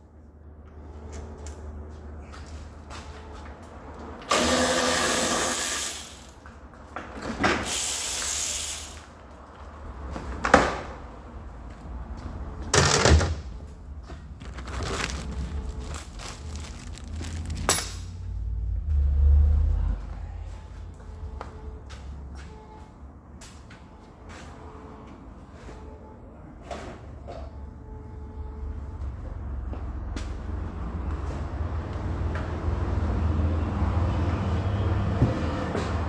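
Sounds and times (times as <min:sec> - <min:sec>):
power tool turning bolts: 0:04.3 - 0:06.4, 0:07.6 - 0:09.0.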